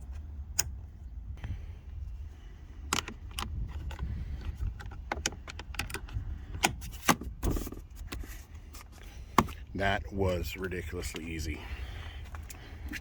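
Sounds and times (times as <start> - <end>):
steady low rumble: 0.0 - 13.0
parts clicking and knocking: 2.8 - 8.2.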